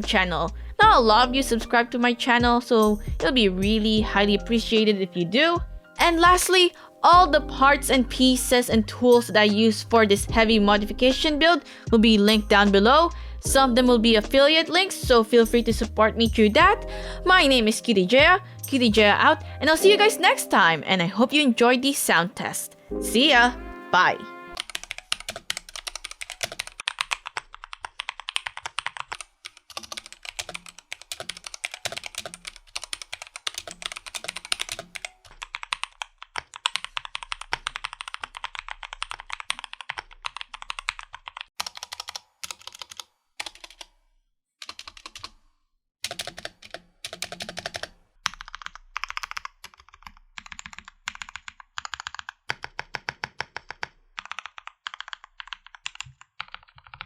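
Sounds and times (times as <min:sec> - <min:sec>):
mechanical keyboard typing: 0:24.6 - 0:43.9, 0:44.6 - 0:45.4, 0:46.0 - 0:57.0.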